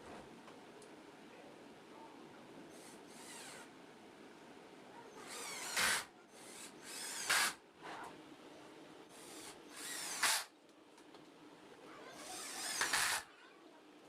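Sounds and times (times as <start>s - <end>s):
power drill whining: 2.7s - 3.7s, 5.2s - 7.6s, 9.2s - 10.5s, 12.2s - 13.2s.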